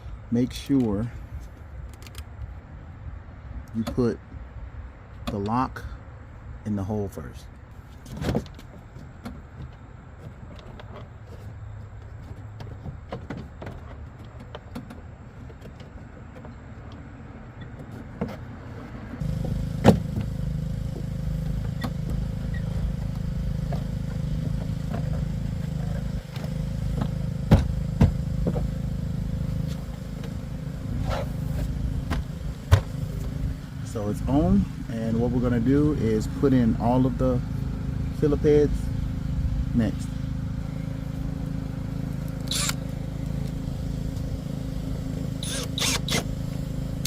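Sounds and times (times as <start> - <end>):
steady low rumble: 19.2 - 47.0.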